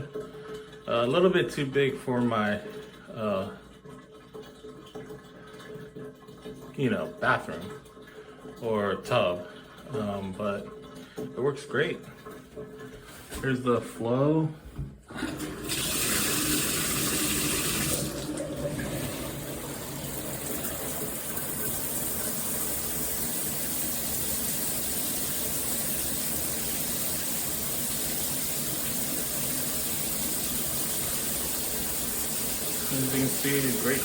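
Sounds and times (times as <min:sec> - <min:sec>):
shower water spraying: 0:15.3 - 0:34.0.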